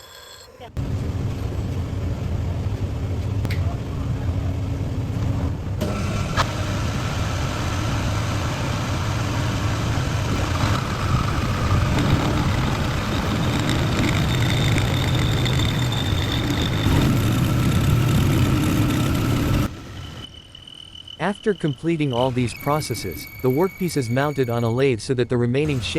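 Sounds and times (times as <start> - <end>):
bench grinder grinding steel: 5.8 - 19.7.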